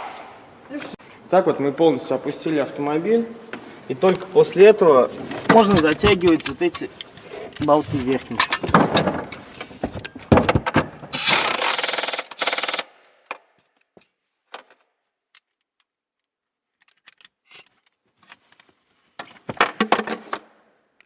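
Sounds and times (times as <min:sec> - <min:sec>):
ratchet wrench clicking: 0:11.2 - 0:12.9.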